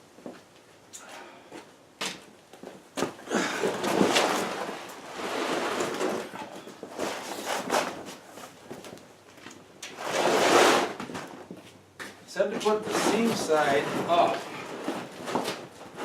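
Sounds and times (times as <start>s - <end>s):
plastic mat rustling and scraping: 3.1s - 9.0s, 9.8s - 16.0s.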